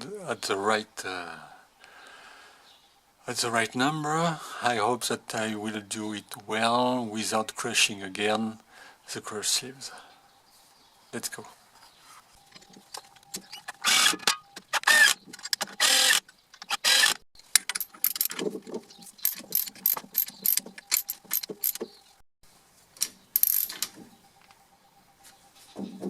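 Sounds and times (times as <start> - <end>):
ratchet rasping strokes: 19.2 - 21.8
ratchet wrench clicking: 23.4 - 23.8.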